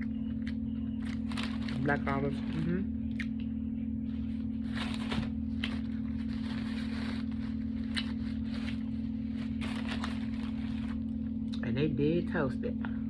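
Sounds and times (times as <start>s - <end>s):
low hum: 0.0s - 13.0s
paper wrapper crackling: 1.0s - 2.7s, 4.6s - 11.4s
eating crunches: 4.8s - 11.6s.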